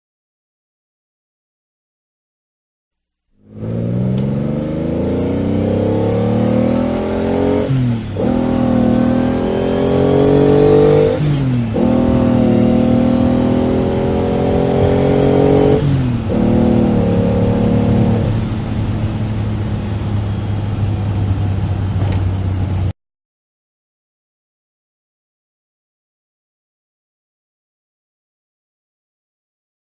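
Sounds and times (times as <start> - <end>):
car engine revving: 3.4 - 22.9.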